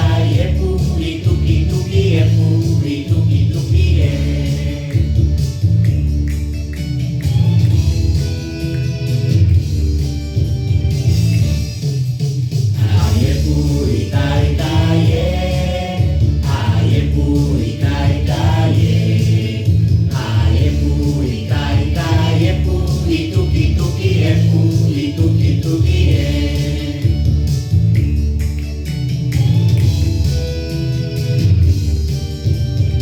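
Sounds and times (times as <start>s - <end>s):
voices singing together: 0.0s - 5.6s, 12.8s - 27.6s
instrumental backing with bass: 0.0s - 33.0s.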